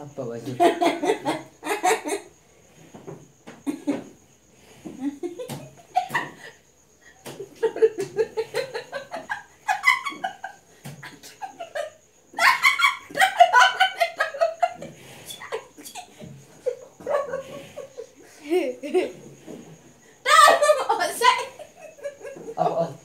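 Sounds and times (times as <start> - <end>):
person yelping: 20.2 - 20.8.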